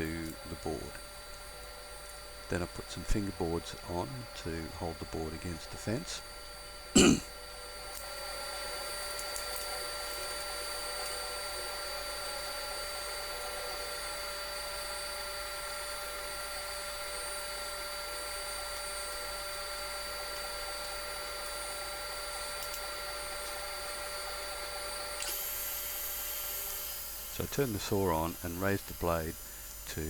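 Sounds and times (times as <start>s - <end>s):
table saw whining: 9.9s - 30.0s.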